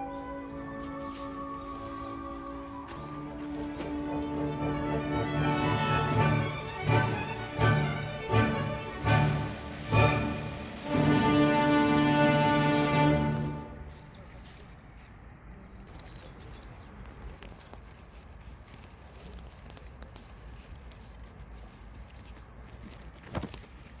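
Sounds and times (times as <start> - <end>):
faint bird chirps: 0.0 - 4.8
background music: 0.0 - 14.1.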